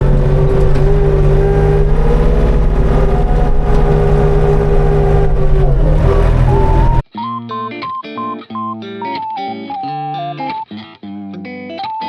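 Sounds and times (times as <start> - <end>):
engine whine: 0.0 - 7.0
snow-clearing machine engine running: 0.0 - 7.0.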